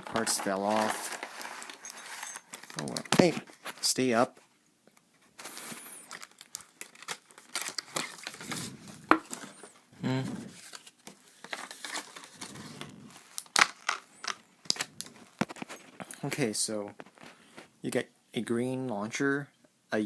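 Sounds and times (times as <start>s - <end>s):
packaging crinkling and tearing: 0.0s - 3.8s, 5.4s - 9.8s, 10.4s - 16.1s.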